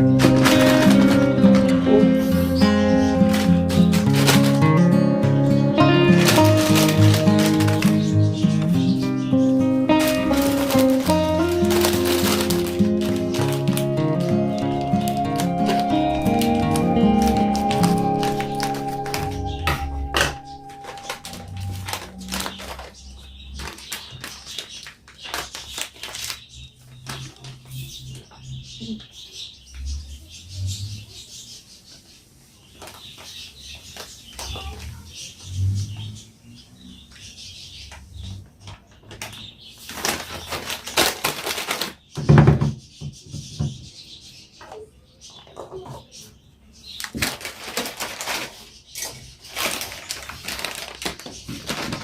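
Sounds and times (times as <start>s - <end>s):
rustling: 0.0s - 26.4s, 47.2s - 52.0s.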